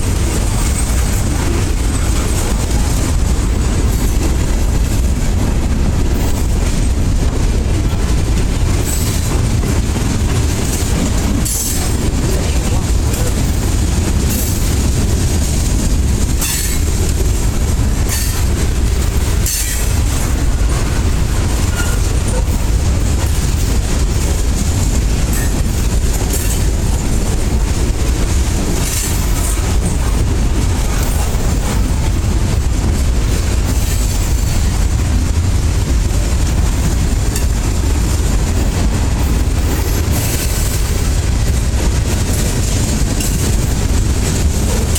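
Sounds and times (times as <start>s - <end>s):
steel wheels rumbling on rail: 0.0s - 44.9s
wheels clacking over rail joints: 0.0s - 44.9s.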